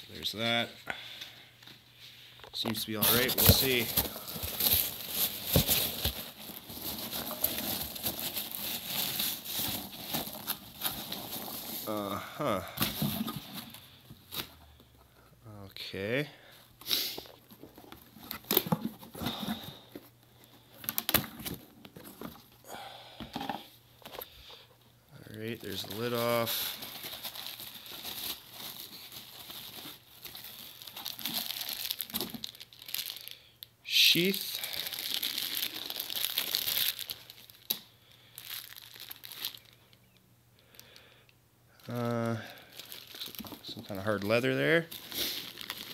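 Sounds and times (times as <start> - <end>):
packaging rustling and scraping: 2.0 - 12.1, 12.8 - 14.9, 16.8 - 22.6, 25.3 - 33.3, 41.8 - 45.9.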